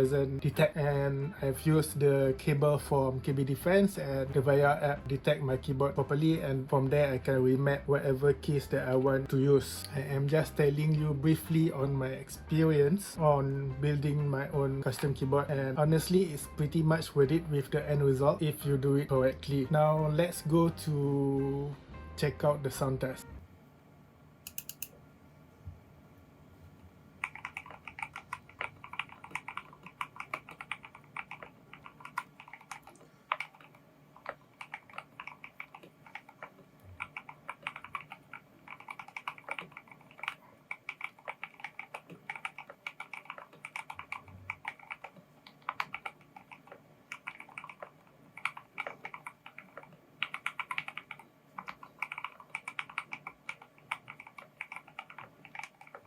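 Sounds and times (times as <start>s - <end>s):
mechanical keyboard typing: 24.5s - 24.9s, 27.2s - 56.0s.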